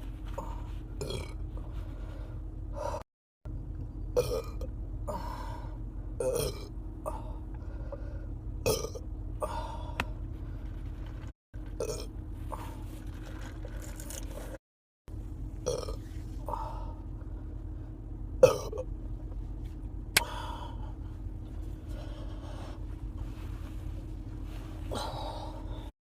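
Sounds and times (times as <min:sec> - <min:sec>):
steady low hum: 0:00.0 - 0:26.0
woman burping: 0:06.2 - 0:06.7, 0:18.4 - 0:18.8.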